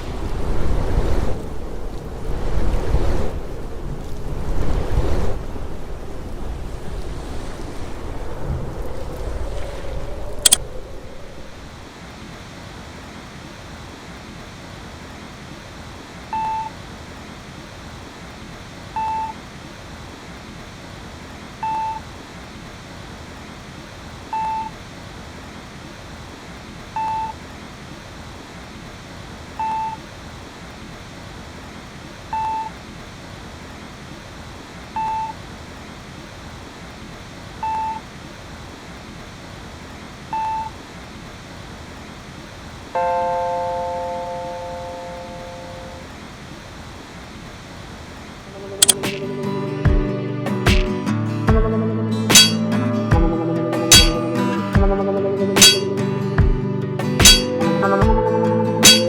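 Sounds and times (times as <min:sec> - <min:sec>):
steady hiss: 0:00.0 - 0:51.4
short electronic beeps: 0:24.4 - 0:24.7, 0:27.0 - 0:27.4, 0:55.6 - 0:55.9.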